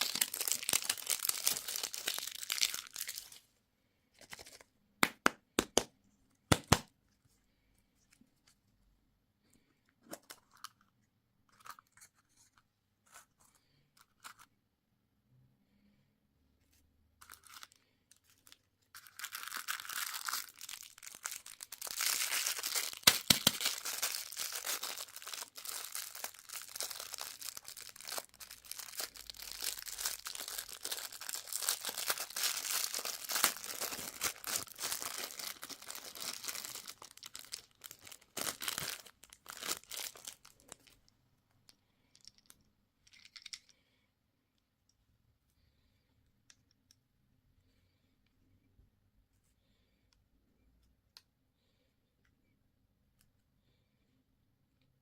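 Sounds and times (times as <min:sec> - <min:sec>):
candy packaging tearing and crinkling: 0:00.0 - 0:03.4, 0:17.2 - 0:41.0.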